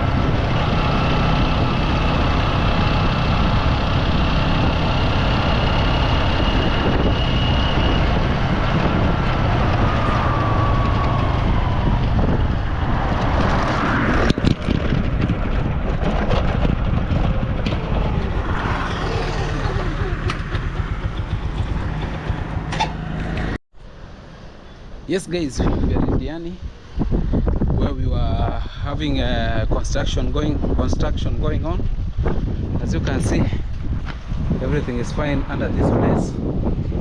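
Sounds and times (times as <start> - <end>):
vehicle engine running: 0.0 - 23.6.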